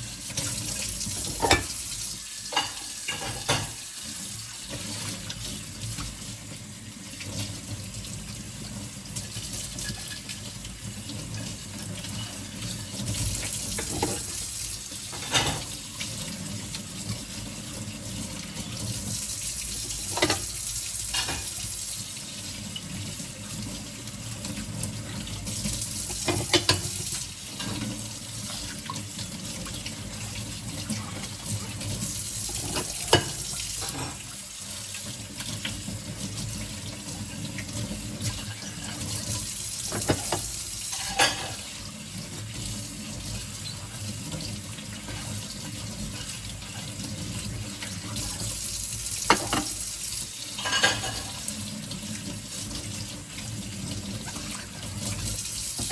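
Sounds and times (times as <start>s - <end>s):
plates clinking together: 1.2s - 1.8s, 2.5s - 3.8s, 13.8s - 14.4s, 15.1s - 15.7s, 20.1s - 21.6s, 26.1s - 27.8s, 32.5s - 34.3s, 39.9s - 41.7s, 49.3s - 49.8s, 50.6s - 51.4s
tap running into sink: 20.0s - 21.7s, 26.1s - 27.9s, 39.0s - 41.6s, 49.2s - 49.8s, 54.2s - 55.9s.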